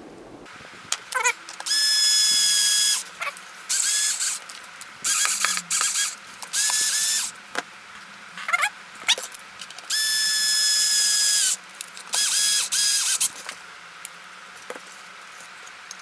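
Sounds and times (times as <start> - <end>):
electric screwdriver whining: 1.6 - 3.0, 3.7 - 4.4, 5.0 - 7.3, 9.9 - 11.6, 12.2 - 13.3.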